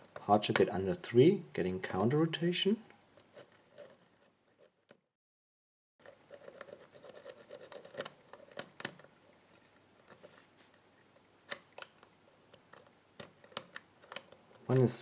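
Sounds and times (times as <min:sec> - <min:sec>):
lock pick clicking and scraping: 0:06.0 - 0:09.1, 0:11.5 - 0:14.8.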